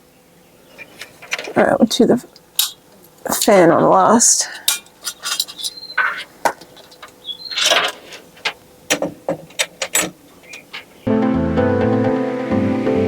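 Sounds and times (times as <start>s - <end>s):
background music: 11.1s - 13.0s.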